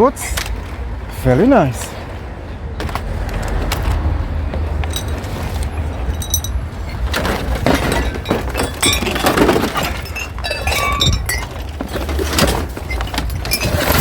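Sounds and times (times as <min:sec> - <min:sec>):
scrap clicking and clinking: 0:04.8 - 0:14.0.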